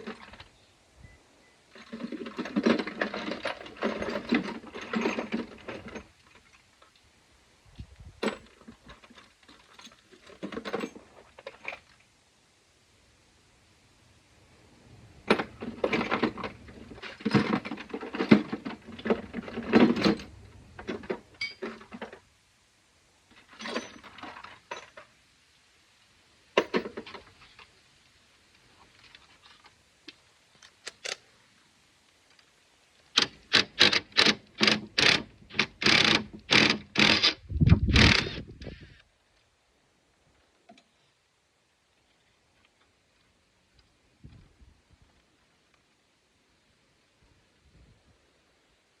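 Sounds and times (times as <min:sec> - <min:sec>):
metal tools clinking: 0:21.1 - 0:21.9, 0:23.4 - 0:25.0.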